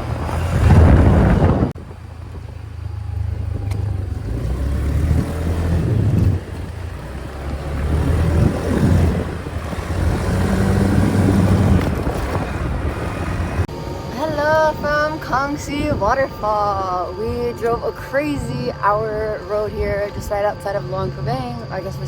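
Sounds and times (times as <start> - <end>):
motorbike engine revving: 0.0 - 14.2
road noise: 0.0 - 22.0.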